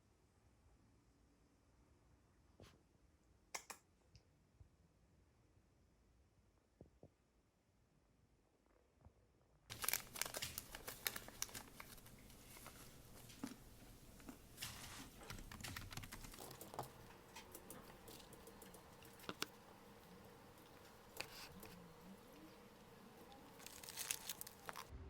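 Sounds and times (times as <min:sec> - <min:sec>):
crinkly rustle: 0:09.7 - 0:24.9.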